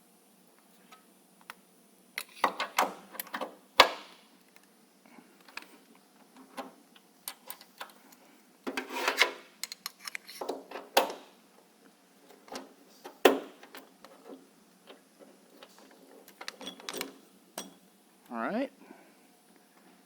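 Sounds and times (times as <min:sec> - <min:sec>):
parts clicking and knocking: 0:02.2 - 0:04.6, 0:08.6 - 0:11.3, 0:12.3 - 0:17.8.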